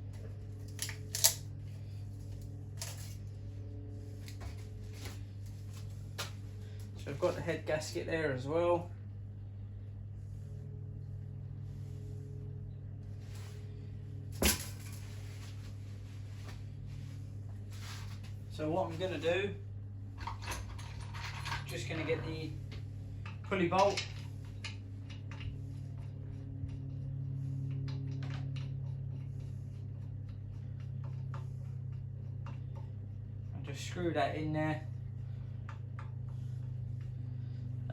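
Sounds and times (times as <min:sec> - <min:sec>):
faint handling noises: 0:00.0 - 0:08.0
steady low hum: 0:00.0 - 0:37.9
metal tools clicking and tapping: 0:00.6 - 0:01.4, 0:02.8 - 0:03.2.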